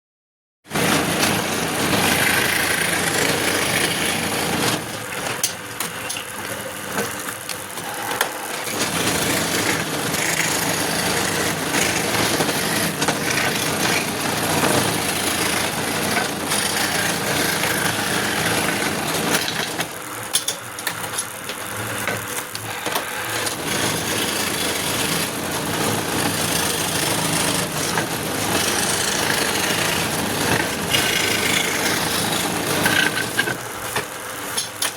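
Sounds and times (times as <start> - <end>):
power tool cutting wood: 0.8 - 5.1, 7.8 - 19.9, 22.6 - 33.7.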